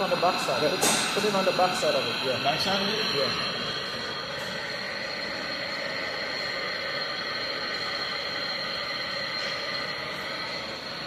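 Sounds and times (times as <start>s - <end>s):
gas torch hissing: 0.0s - 11.0s.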